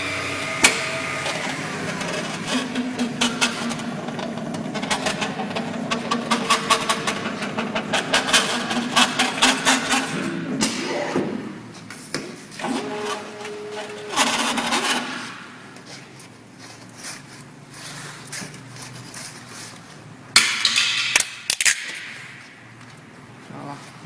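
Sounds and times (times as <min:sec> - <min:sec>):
machine whine: 0:00.0 - 0:08.0, 0:12.6 - 0:15.4
loud metallic clatter: 0:00.6 - 0:11.1.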